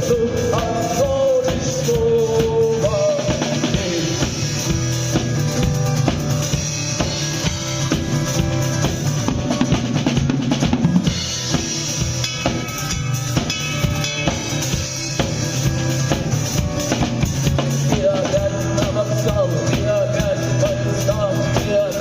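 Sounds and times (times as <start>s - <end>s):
person singing: 0.0s - 4.8s, 17.7s - 22.0s
drum kit playing rock beat: 0.0s - 22.0s.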